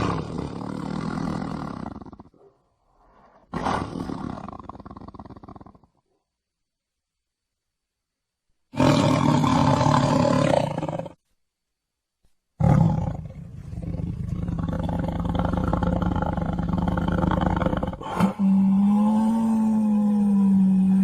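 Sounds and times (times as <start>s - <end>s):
tiger roaring: 0.0s - 2.5s, 3.2s - 5.8s, 8.7s - 11.2s, 12.6s - 21.0s.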